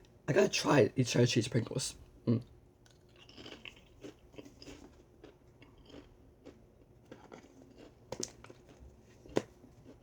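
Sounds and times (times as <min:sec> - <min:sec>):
crisps being chewed: 0:02.8 - 0:10.0.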